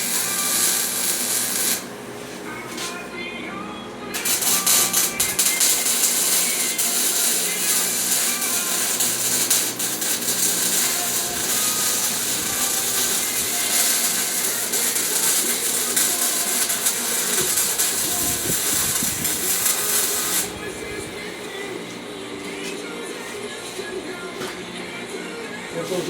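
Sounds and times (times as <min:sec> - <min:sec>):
welding arc crackling and hissing: 0:00.0 - 0:03.0, 0:04.2 - 0:20.7.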